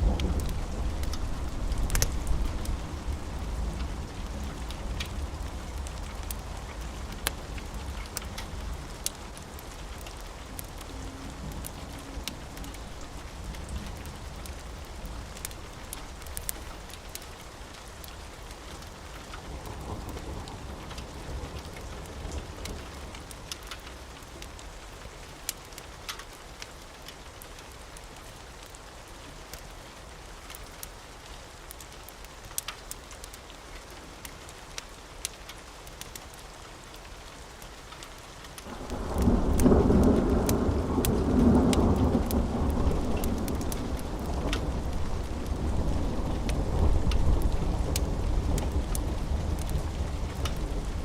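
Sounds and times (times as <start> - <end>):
distant thunder rumble: 0.0 - 9.1, 38.7 - 51.0
wood fire crackling: 0.0 - 19.8, 20.5 - 51.0
steady rain: 0.0 - 51.0.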